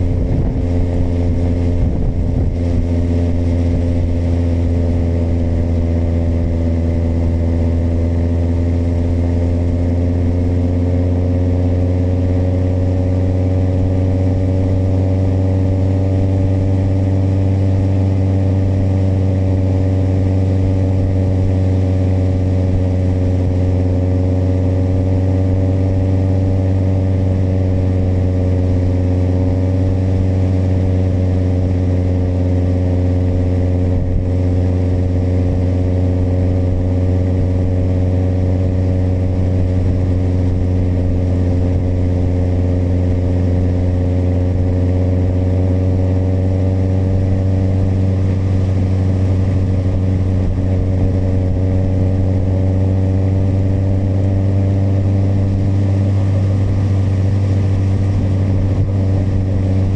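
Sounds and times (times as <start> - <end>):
motorcycle engine cruising: 0.0 - 59.9.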